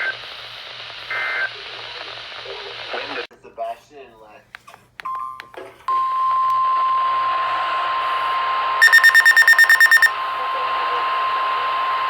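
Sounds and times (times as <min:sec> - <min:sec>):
radio hiss: 0:00.0 - 0:03.3, 0:08.0 - 0:12.0
rapid high-pitched beeps: 0:08.8 - 0:10.1
steady alarm tone: 0:08.8 - 0:10.2.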